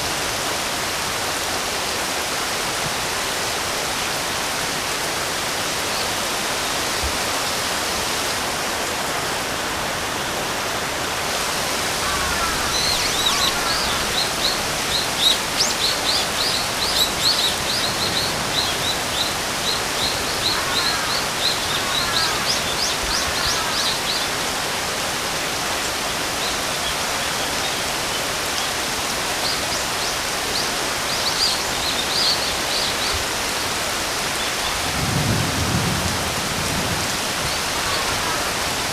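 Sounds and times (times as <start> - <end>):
steady rain: 0.0 - 38.9.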